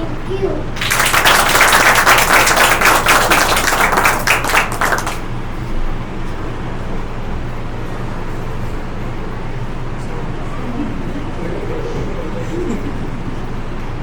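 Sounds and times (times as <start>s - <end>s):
low room hum: 0.0s - 14.0s
audience applauding: 0.8s - 5.3s.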